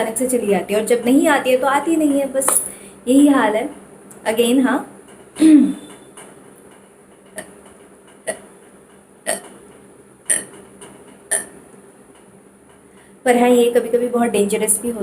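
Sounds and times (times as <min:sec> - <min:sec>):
woman hiccuping: 0:05.4 - 0:05.9, 0:10.3 - 0:10.5, 0:11.3 - 0:11.6.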